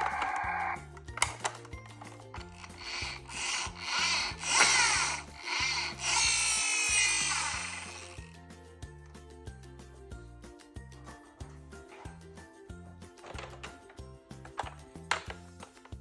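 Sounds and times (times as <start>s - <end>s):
background music: 0.0s - 16.0s
toy cars rolling down slope: 2.4s - 8.3s.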